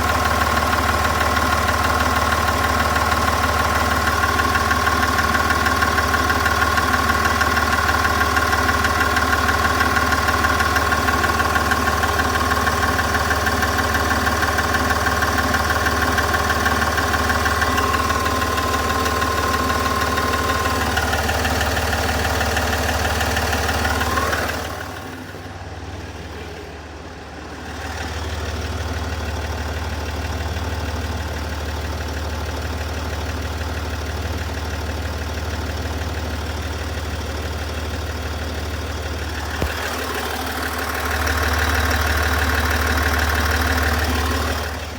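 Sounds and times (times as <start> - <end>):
engine ticking: 0.0 - 26.6, 27.4 - 44.9
diesel engine idling: 0.0 - 44.9.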